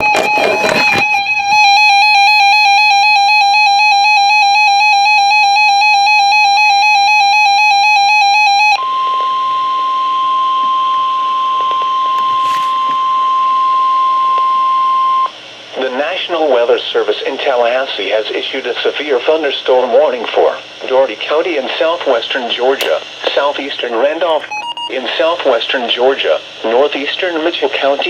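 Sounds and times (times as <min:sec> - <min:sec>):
radio static: 0:00.0 - 0:01.3
radio hiss: 0:15.8 - 0:28.0.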